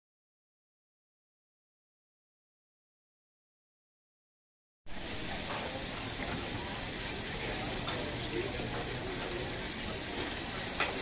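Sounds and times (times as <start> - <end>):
chicken sizzling in hot oil: 4.9 - 11.0.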